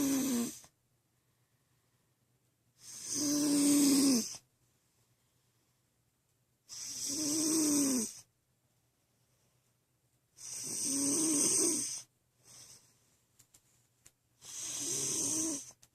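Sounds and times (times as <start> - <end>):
loud snoring: 0.0 - 0.6, 2.8 - 4.4, 6.7 - 8.2, 10.4 - 12.1, 14.4 - 15.7.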